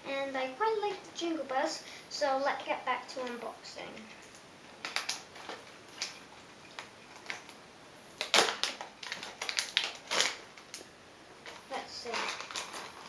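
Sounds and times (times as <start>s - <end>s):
plastic packaging crinkling: 4.1s - 7.6s, 8.2s - 13.0s
plastic packaging clicks: 4.8s - 7.6s, 8.2s - 13.0s.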